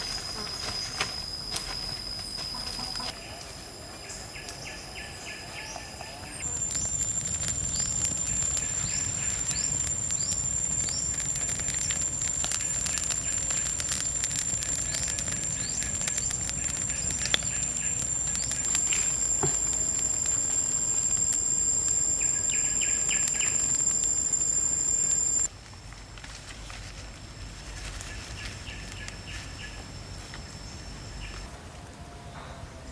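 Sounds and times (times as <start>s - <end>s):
insect high-pitched drone: 0.0s - 25.5s, 27.3s - 31.6s
insect chirps: 0.0s - 31.5s
insect clicks: 6.4s - 25.5s.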